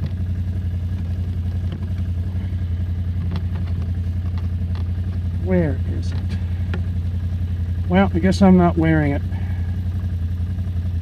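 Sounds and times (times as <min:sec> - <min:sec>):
atv engine idling: 0:00.0 - 0:11.0.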